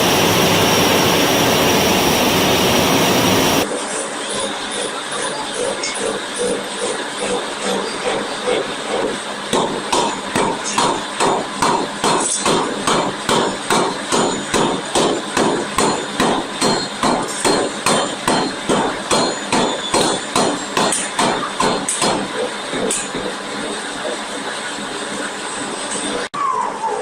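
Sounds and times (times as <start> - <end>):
forging hammer striking metal: 9.5 - 23.4.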